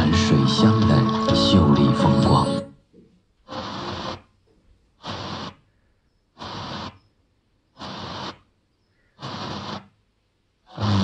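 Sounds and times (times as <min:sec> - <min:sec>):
radio static hiss bursts: 0:03.5 - 0:04.3, 0:05.0 - 0:11.0.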